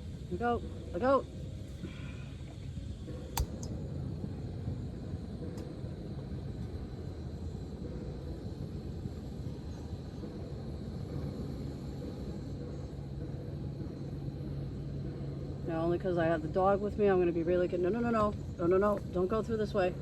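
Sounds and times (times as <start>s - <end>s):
sharp click: 3.4s - 3.7s.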